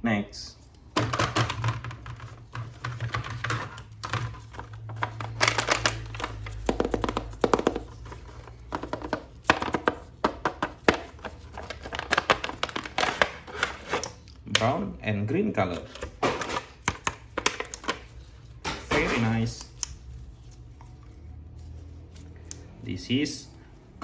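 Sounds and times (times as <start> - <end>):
plastic packaging crackling: 0.7 - 14.3.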